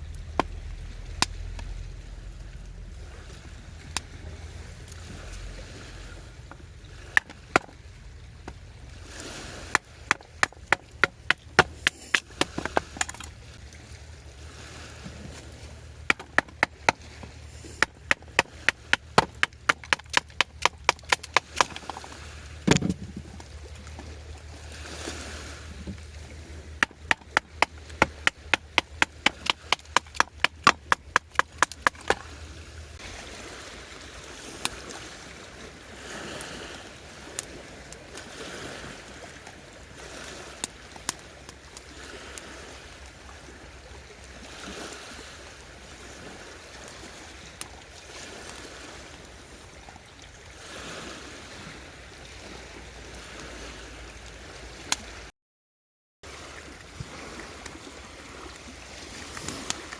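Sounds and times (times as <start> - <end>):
low steady rumble: 0.0 - 34.4
knife chopping wood: 0.4 - 0.6, 7.1 - 7.8, 9.7 - 13.3, 16.1 - 22.1, 22.7 - 23.2, 26.8 - 32.4
heavy thump: 22.7 - 23.3.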